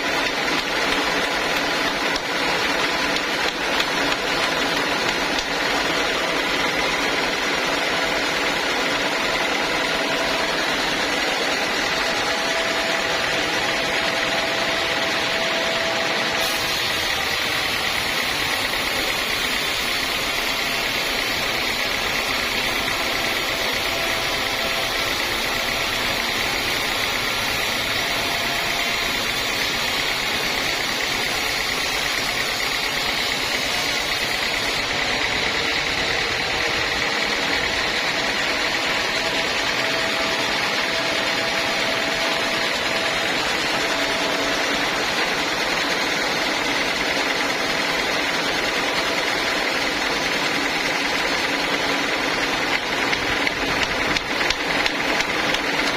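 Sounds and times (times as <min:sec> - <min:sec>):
band saw sawing through log: 0:00.0 - 0:55.9.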